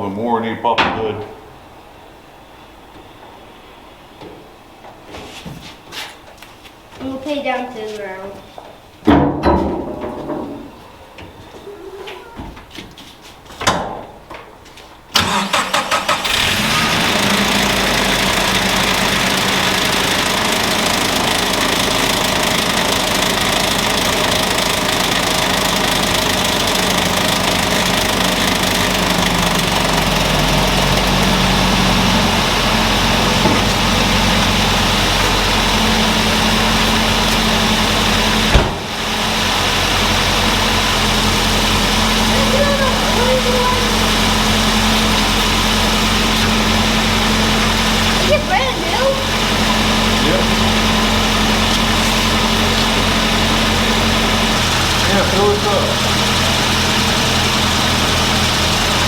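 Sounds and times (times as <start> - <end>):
pickup engine starting and idling: 15.1 - 59.0.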